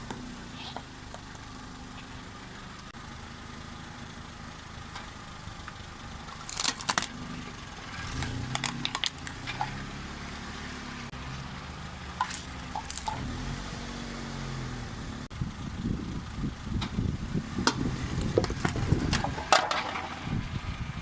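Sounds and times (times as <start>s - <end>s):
car engine running: 0.0s - 21.0s
brittle object crushed under tyre: 6.3s - 9.8s, 12.2s - 13.3s, 17.6s - 20.2s.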